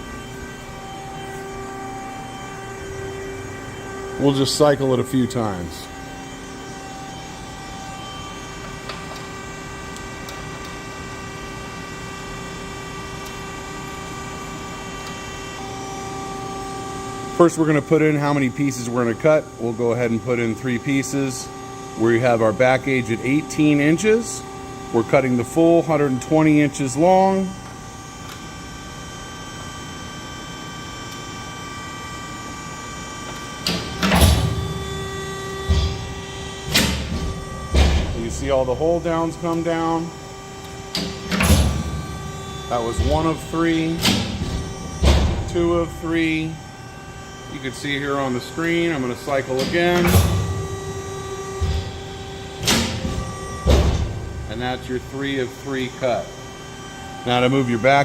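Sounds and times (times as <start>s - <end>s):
hydraulic power unit humming: 0.0s - 58.0s
machine clunks: 33.6s - 46.7s, 48.6s - 55.4s.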